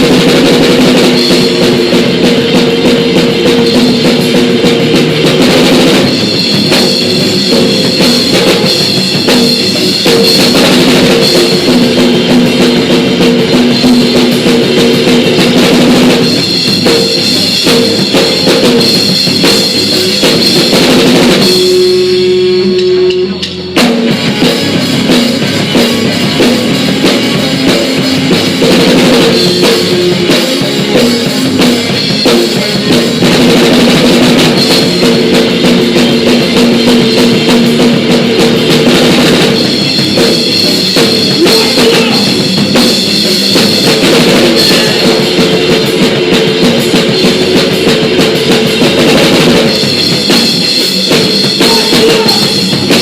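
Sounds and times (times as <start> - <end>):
drum kit kick and snare: 0.0 - 53.0
electric guitar: 0.0 - 53.0
live rock band playing: 0.0 - 53.0.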